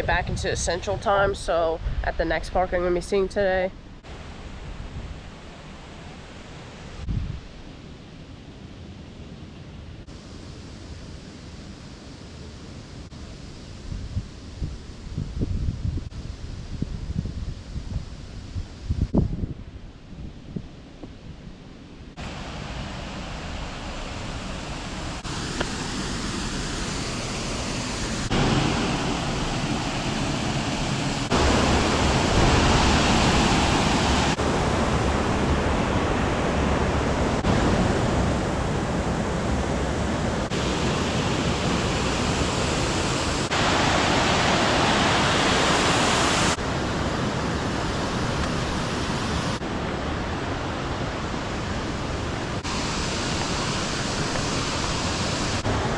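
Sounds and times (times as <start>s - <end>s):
waterfall rushing: 22.2s - 55.9s.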